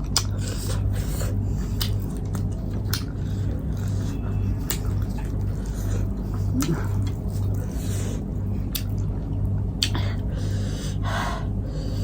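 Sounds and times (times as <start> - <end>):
wet mouth clicks: 0.0 - 0.9, 1.6 - 7.8, 8.7 - 9.1, 9.8 - 10.0
person chewing: 0.0 - 9.2
steady low hum: 0.0 - 12.0.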